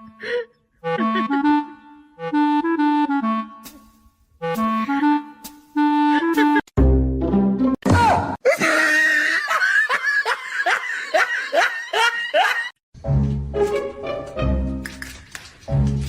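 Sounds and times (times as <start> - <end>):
hearty laughter: 8.4 - 12.8.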